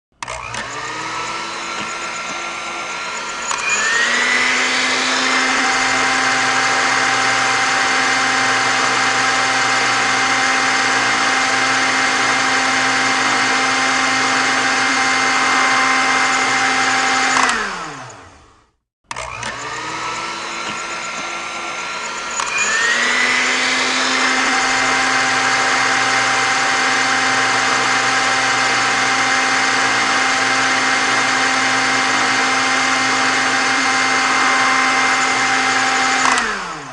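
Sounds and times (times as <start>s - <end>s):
kitchen mixer motor whining: 0.1s - 36.9s.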